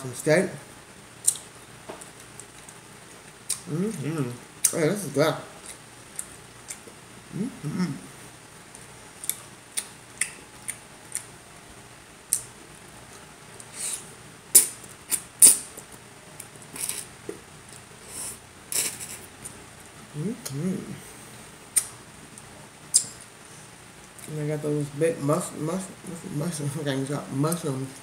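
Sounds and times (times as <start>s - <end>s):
chewing and mouth sounds: 1.2s - 4.0s.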